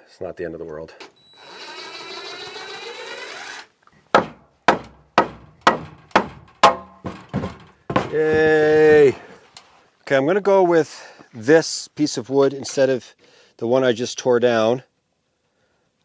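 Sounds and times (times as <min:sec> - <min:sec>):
hammer blows on wood: 0:04.1 - 0:08.7.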